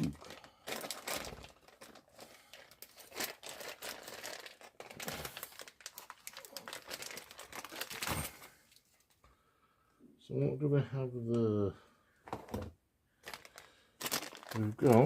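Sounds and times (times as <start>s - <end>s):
plastic bag crinkling: 0.0s - 9.1s, 13.1s - 15.0s.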